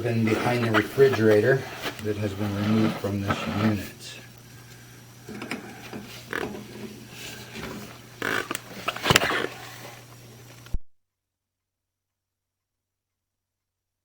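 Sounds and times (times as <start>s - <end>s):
steady low hum: 0.0s - 10.8s.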